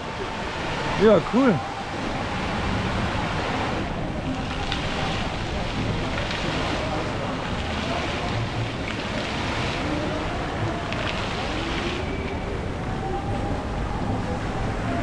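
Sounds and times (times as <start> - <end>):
fountain water rushing: 0.0 - 15.0.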